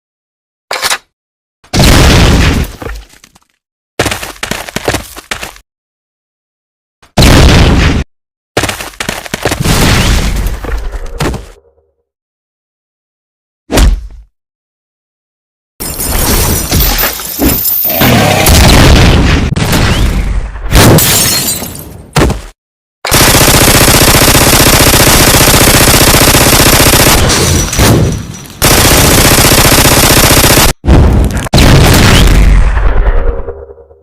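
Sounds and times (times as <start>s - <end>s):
rapid-fire rattle: 23.1s - 27.2s, 28.6s - 30.8s.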